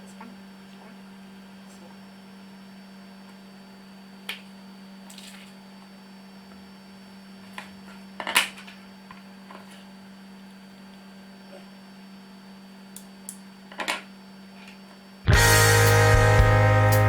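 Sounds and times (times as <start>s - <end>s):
steady low hum: 15.3s - 17.0s.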